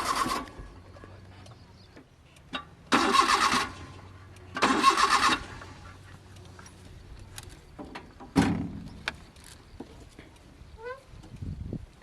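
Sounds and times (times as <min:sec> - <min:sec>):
car starter motor cranking: 0:00.0 - 0:00.8, 0:02.5 - 0:05.8.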